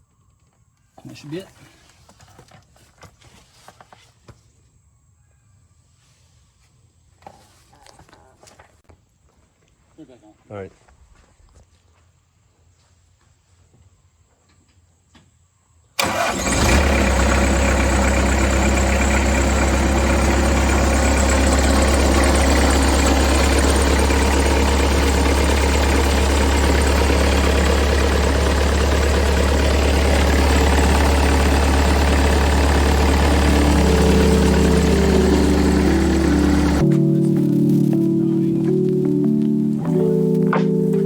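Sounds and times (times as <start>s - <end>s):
diesel engine starting and running: 16.0s - 41.0s.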